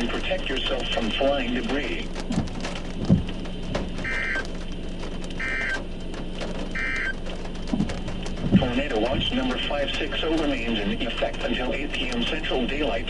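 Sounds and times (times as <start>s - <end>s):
steady low hum: 0.0s - 13.0s
short electronic beeps: 4.1s - 4.4s, 6.8s - 7.1s.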